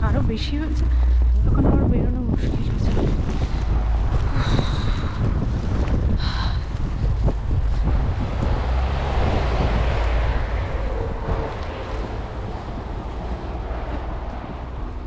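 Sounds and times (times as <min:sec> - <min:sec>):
wind buffeting microphone: 0:00.0 - 0:15.0.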